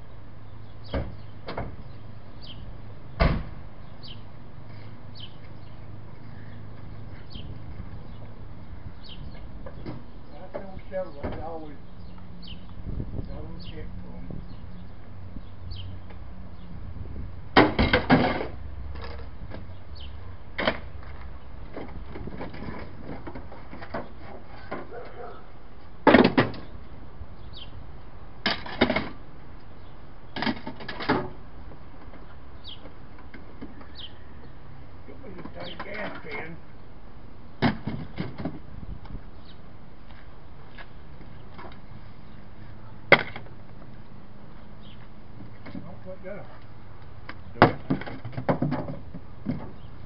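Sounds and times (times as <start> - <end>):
loud thump: 3.2 - 3.6.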